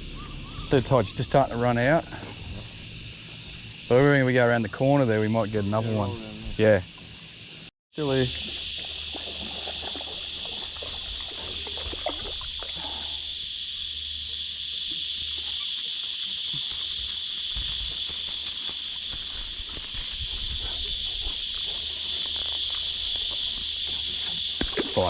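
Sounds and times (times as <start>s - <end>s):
insects buzzing: 0.0s - 25.0s
fast-pulsing high buzz: 8.0s - 25.0s.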